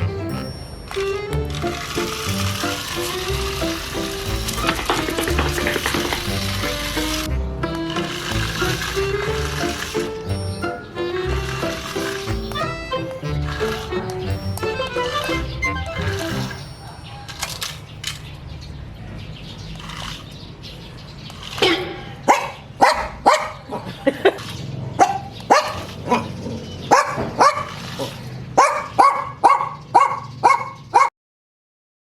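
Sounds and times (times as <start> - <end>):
dog barking: 22.2 - 23.9, 25.0 - 31.1.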